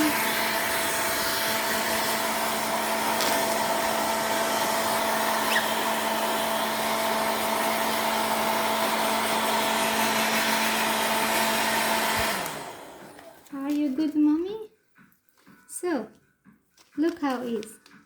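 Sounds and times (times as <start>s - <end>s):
hair dryer running: 0.0s - 13.5s.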